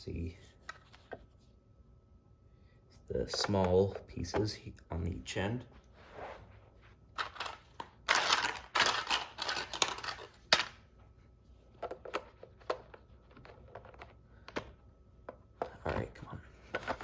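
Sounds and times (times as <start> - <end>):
plastic toy track pieces clattering: 7.2 - 10.8.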